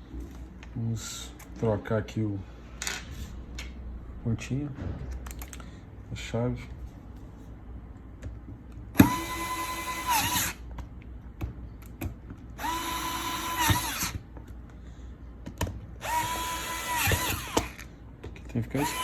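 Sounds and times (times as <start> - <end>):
electric screwdriver whine: 9.0 - 10.6, 12.6 - 14.2, 16.0 - 17.8, 18.8 - 19.0.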